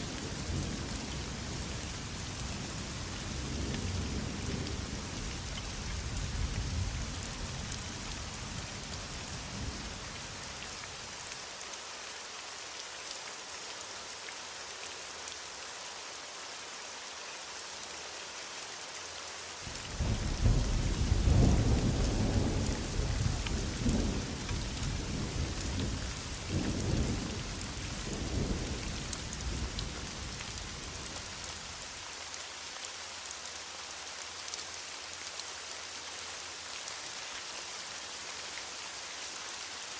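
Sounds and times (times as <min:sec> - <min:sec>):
heavy rain: 0:00.0 - 0:39.9
thunder rumbling: 0:19.9 - 0:30.3.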